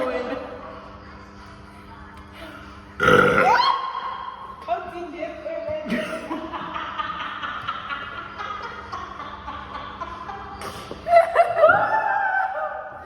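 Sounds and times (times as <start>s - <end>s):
faint background music: 0.0s - 13.0s
people laughing: 5.9s - 13.0s.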